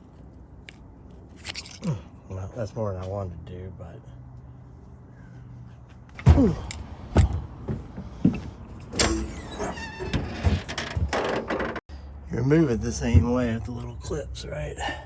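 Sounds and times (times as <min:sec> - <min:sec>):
metal knocks and clanks: 0:06.2 - 0:11.8
metal squeak: 0:08.8 - 0:11.8.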